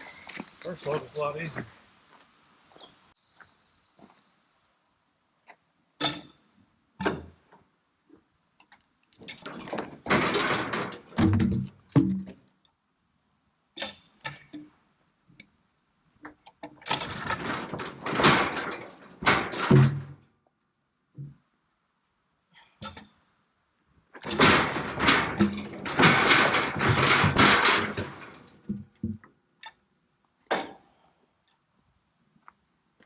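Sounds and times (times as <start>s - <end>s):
logs knocking and rolling: 8.6s - 12.6s, 16.2s - 20.3s, 24.0s - 29.8s
heavy thumps: 24.3s - 29.2s.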